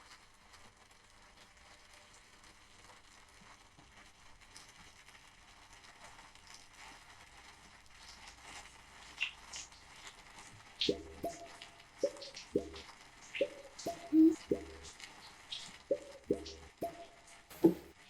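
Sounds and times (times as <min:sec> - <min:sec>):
faint rustling and crackling: 0:00.0 - 0:13.9
sharp clicks: 0:10.8 - 0:18.0.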